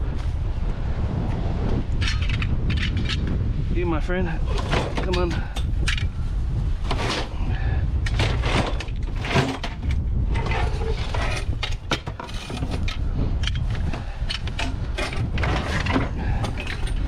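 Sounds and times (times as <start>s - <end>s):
steady low rumble: 0.0s - 17.0s
junk knocking and clattering: 4.5s - 6.0s, 8.0s - 17.0s.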